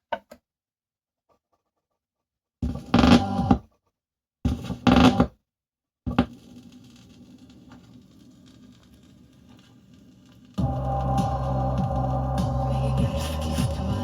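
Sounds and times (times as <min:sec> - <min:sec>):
vinyl surface hiss and crackle: 0:06.1 - 0:14.0
loud bursts of record sound: 0:06.2 - 0:14.0.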